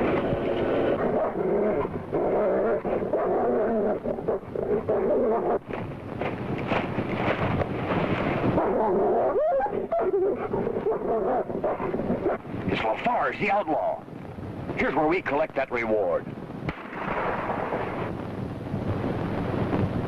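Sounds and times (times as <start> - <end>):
dog whining and yelping: 8.6 - 12.4.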